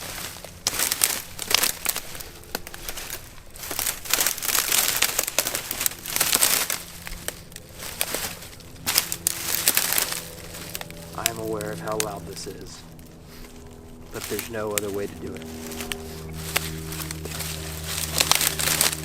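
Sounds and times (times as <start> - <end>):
dry branches snapping and crackling: 0.0 - 19.0.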